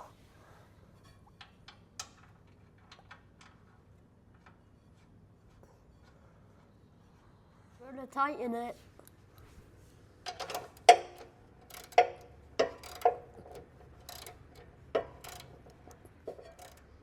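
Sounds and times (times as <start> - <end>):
wrench clicking on metal: 10.3 - 17.0.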